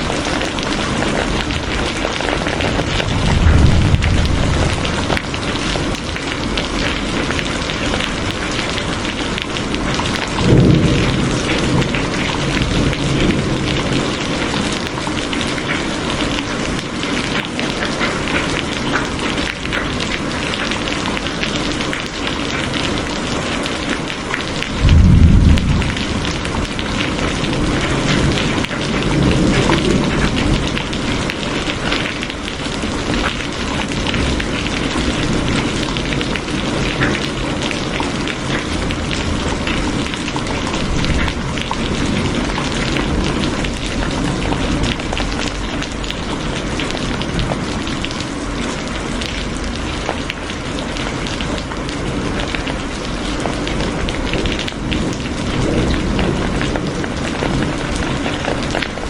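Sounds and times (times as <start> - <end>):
thunder rumbling: 0.0 - 16.8, 24.4 - 47.9
steady rain falling: 0.0 - 59.0.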